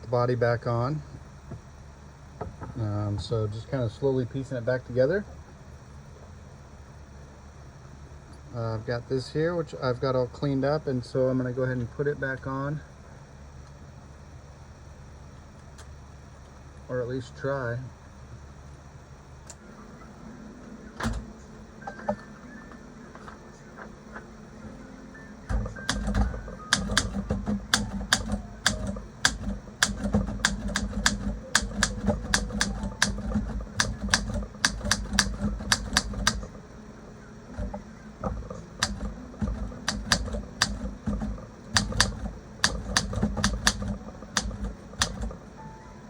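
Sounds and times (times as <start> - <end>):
manual typewriter typing: 25.5 - 36.6, 37.5 - 45.4.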